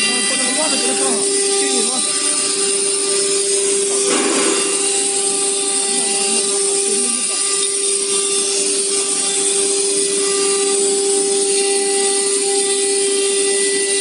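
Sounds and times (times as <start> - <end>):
router spindle whine: 0.0 - 14.0
machining hiss: 1.2 - 9.5.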